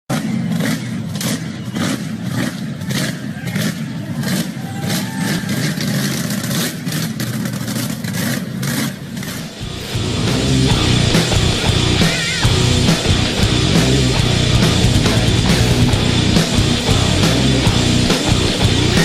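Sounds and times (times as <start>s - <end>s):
off-road vehicle engine revving: 0.1s - 19.0s
sharp cracks: 0.1s - 19.0s.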